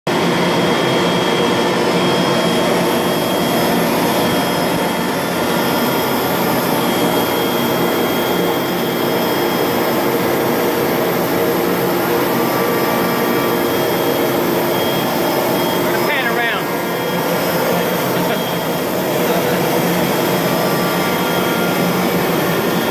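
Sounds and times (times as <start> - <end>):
cnc router machining noise: 0.1 - 22.9
thin high tones: 10.6 - 22.8.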